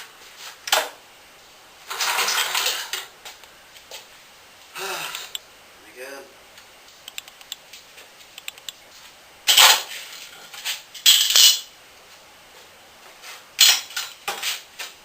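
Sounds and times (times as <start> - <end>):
metal objects clattering: 1.9 - 3.1, 9.5 - 11.7.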